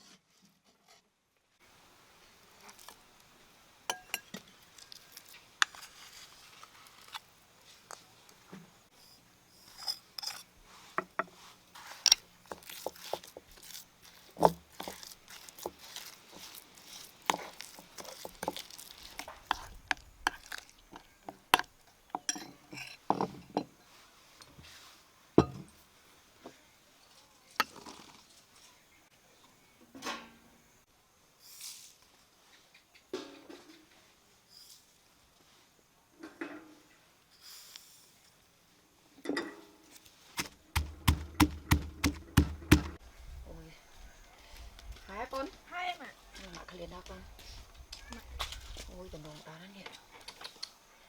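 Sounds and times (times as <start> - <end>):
dishes and utensils clinking: 3.9 - 4.5, 22.2 - 23.7.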